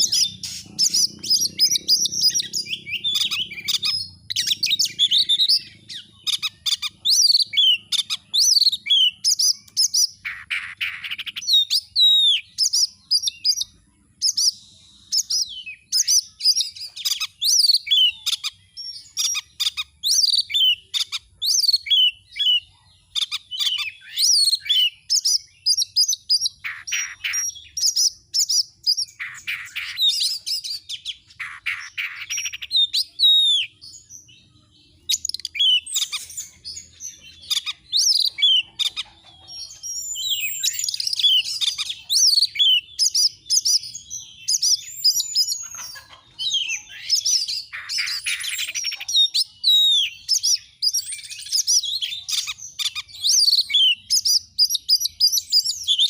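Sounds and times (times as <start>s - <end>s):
bird singing whistled phrases: 0.0s - 56.0s.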